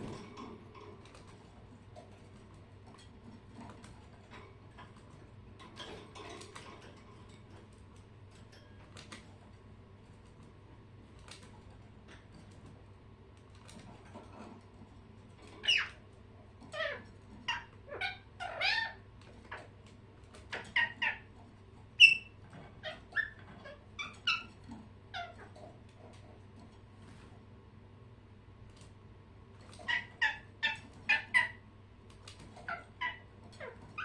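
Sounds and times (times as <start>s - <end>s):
pet birds chirping: 15.4s - 26.2s, 29.6s - 34.0s.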